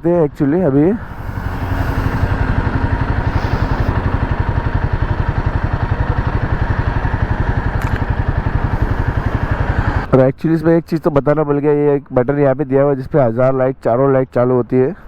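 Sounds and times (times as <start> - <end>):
motorcycle engine idling: 1.0 - 10.1.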